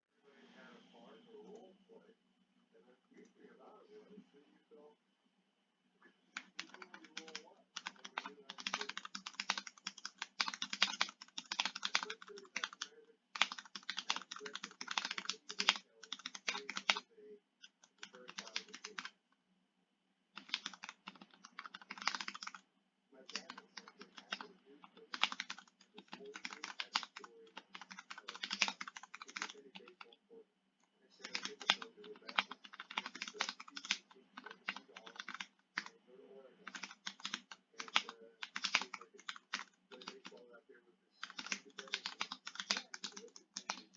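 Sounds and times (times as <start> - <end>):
mechanical keyboard typing: 6.4 - 17.0, 17.6 - 19.1, 20.4 - 22.6, 23.3 - 30.1, 31.2 - 35.9, 36.6 - 40.4, 41.2 - 43.9.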